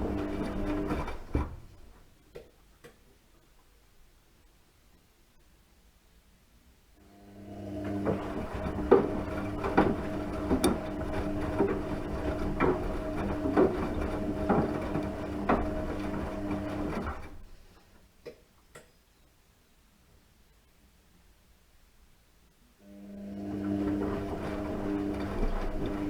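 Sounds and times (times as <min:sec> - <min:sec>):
washing machine motor hum: 0:00.0 - 0:01.8, 0:07.1 - 0:17.6, 0:22.9 - 0:26.0.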